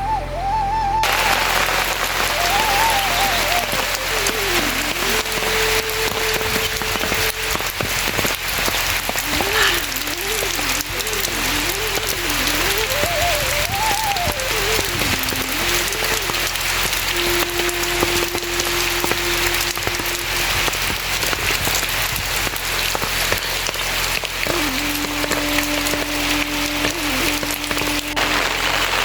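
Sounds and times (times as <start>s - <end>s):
thin background music melody: 0.0s - 7.5s, 9.9s - 20.3s
rain hissing and pattering: 1.0s - 29.0s.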